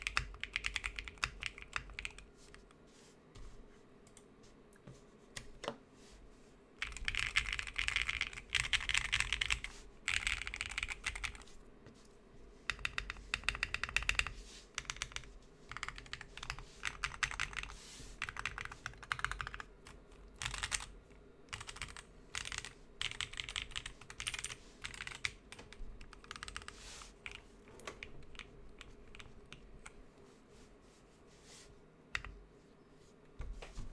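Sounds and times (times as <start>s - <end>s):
mechanical keyboard typing: 0.0s - 2.2s, 6.8s - 11.4s, 12.7s - 29.9s.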